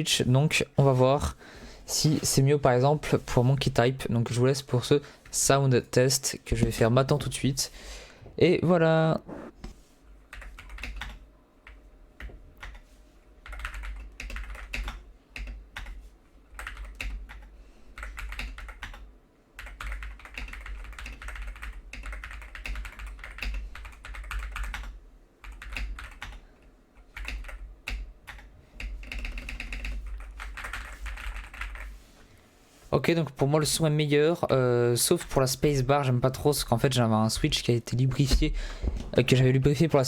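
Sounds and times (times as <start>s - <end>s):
fast typing on mechanical keyboard: 10.3s - 11.8s, 12.6s - 12.8s, 13.4s - 16.0s, 16.6s - 26.4s, 27.0s - 31.9s.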